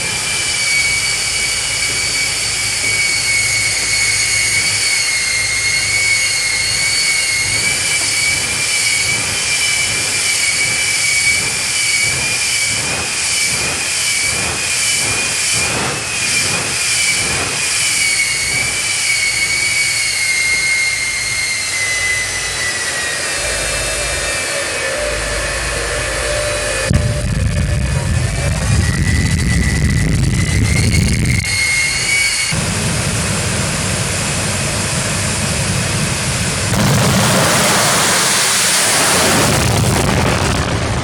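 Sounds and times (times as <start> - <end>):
wind roaring with whistle: 0.0 - 41.0
deep low rumble: 23.4 - 38.3.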